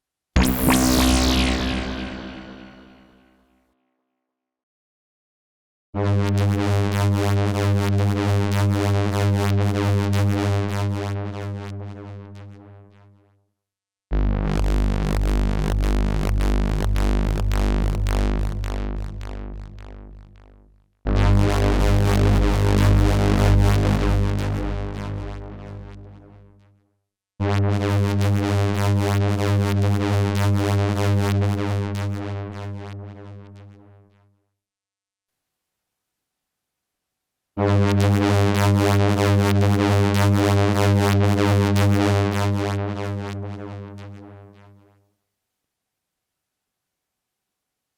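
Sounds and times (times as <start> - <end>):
low buzzy synthesizer tones: 0.4 - 3.2.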